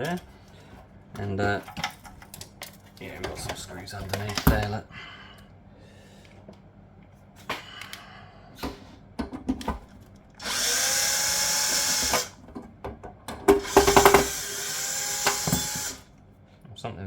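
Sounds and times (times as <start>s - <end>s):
handling clicks and knocks: 1.2s - 4.8s
power drill whirring: 10.4s - 12.4s, 13.5s - 16.1s.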